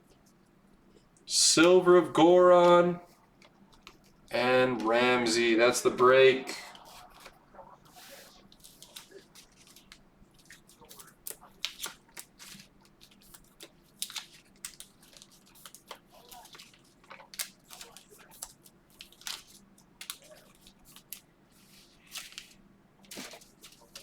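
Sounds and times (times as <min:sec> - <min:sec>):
card wrappers crinkling: 0:06.6 - 0:24.0.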